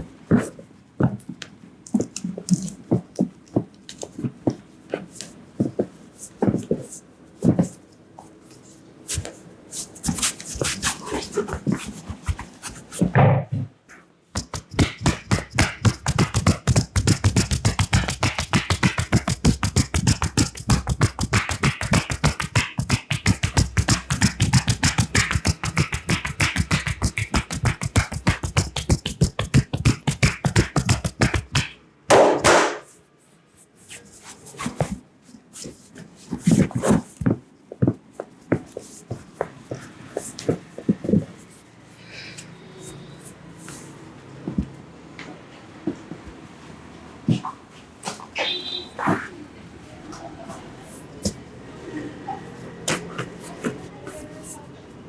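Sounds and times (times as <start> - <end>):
hands slapping and tapping body: 9.1 - 13.1, 14.3 - 33.0, 52.8 - 54.3.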